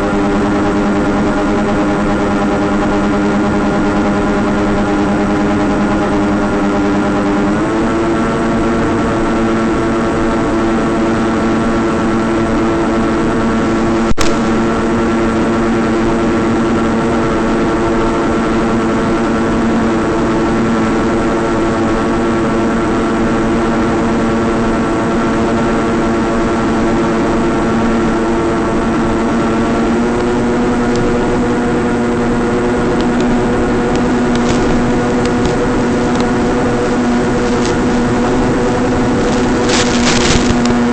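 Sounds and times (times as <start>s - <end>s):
model plane motor humming: 0.0s - 40.9s
sharp click: 14.1s - 14.6s.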